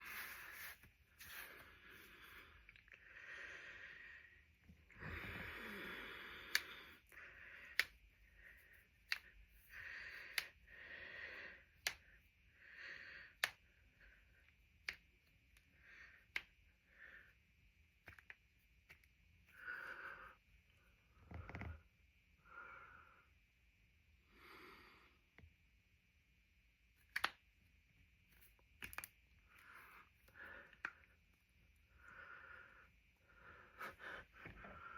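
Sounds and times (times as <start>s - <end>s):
knuckles cracking: 6.3s - 6.9s, 7.6s - 8.0s, 9.0s - 9.4s, 27.0s - 27.4s, 28.4s - 29.8s.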